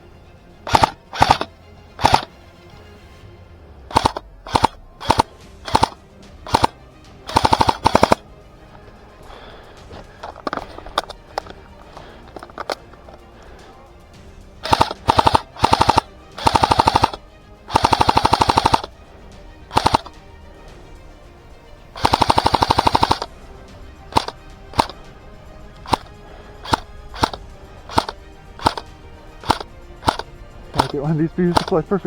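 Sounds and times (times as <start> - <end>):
airsoft gun firing: 0.7 - 2.3, 3.9 - 8.2, 9.2 - 13.2, 14.6 - 19.0, 19.7 - 20.3, 22.0 - 23.4, 24.0 - 25.2, 25.8 - 31.9.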